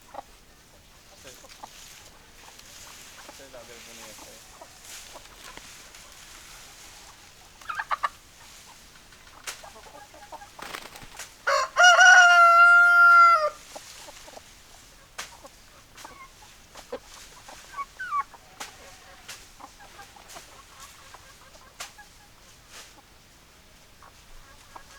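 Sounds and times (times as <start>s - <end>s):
hens clucking: 0.0s - 24.9s
rooster crowing: 11.4s - 13.6s.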